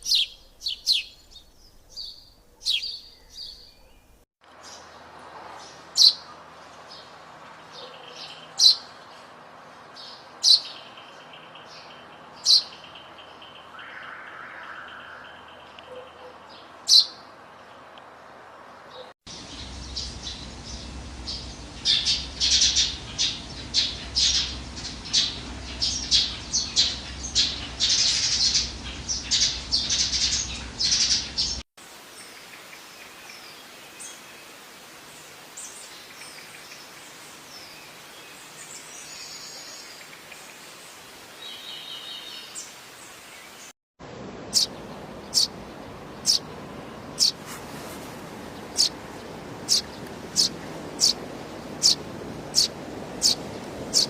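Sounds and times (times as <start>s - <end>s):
sparrows chirping: 0.0s - 17.8s, 18.9s - 31.6s, 44.4s - 47.6s, 48.4s - 54.0s.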